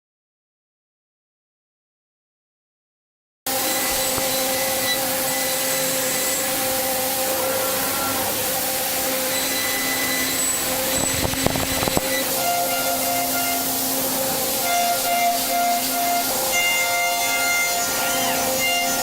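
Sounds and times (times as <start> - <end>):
cnc machine whining hiss: 3.5 - 19.0.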